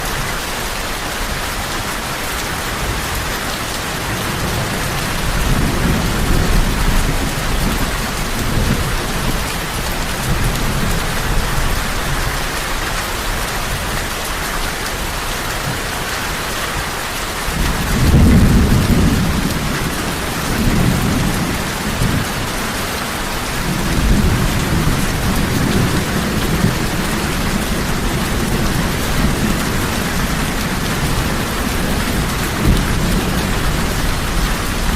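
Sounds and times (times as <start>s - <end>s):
heavy rain hissing: 0.0s - 34.9s
rolling thunder rumbles: 3.1s - 12.4s, 17.5s - 34.9s.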